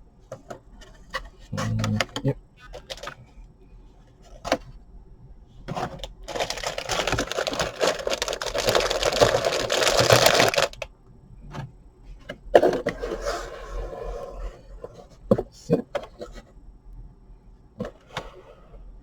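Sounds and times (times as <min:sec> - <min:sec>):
packaging crinkling and rustling: 0:02.7 - 0:03.2, 0:05.7 - 0:10.9.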